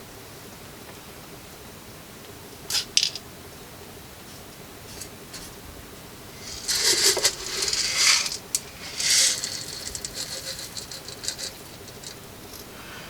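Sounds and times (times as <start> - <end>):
grain kernels rattling into metal hopper: 6.3 - 12.7
kernels ticking as they settle: 6.3 - 12.7.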